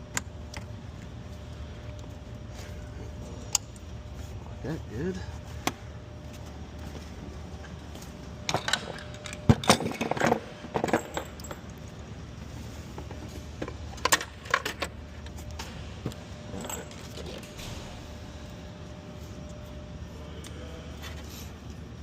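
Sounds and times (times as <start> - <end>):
metal tools clinking: 8.5 - 11.9, 16.5 - 17.6.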